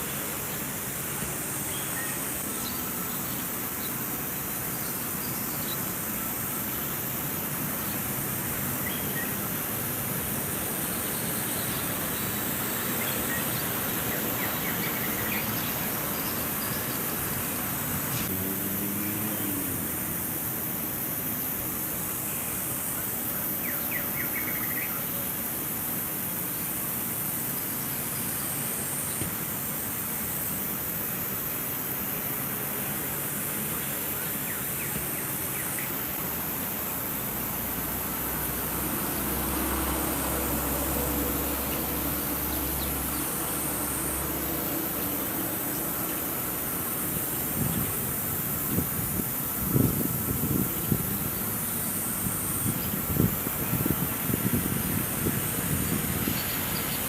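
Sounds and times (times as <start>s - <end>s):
steady hiss: 0.0s - 57.0s.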